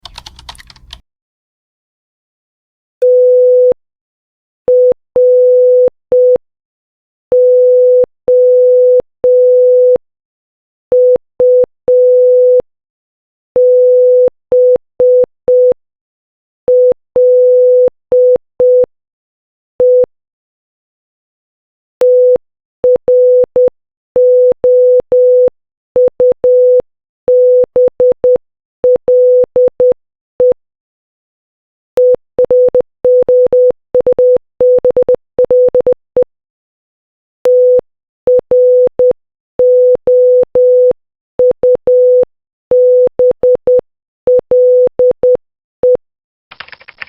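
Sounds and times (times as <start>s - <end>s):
morse code beeps: 32.0s - 36.3s, 37.5s - 46.0s.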